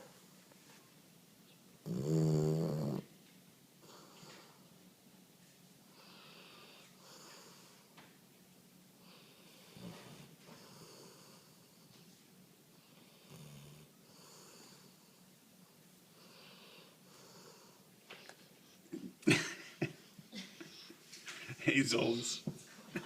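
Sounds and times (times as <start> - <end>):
pet snoring with whistling wheeze: 1.8 - 3.0.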